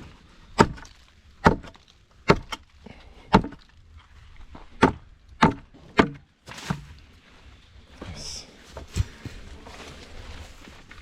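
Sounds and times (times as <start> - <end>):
sharp blows on wooden boards: 0.6 - 2.6, 3.3 - 3.6, 4.8 - 6.8.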